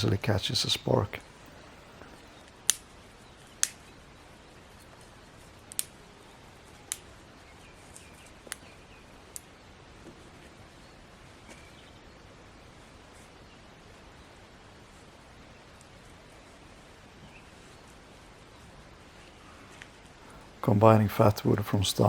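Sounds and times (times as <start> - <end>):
faint outdoor hiss: 0.0 - 22.0
sticks and twigs cracking: 2.0 - 3.9, 4.8 - 6.0, 6.9 - 7.2.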